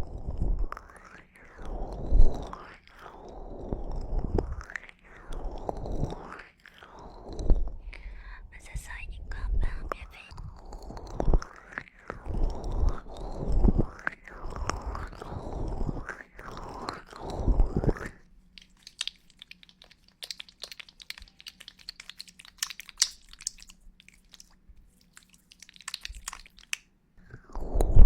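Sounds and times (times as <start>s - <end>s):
crisp clicks: 9.9s - 26.9s
rubbing and scratching on microphone: 10.3s - 26.7s.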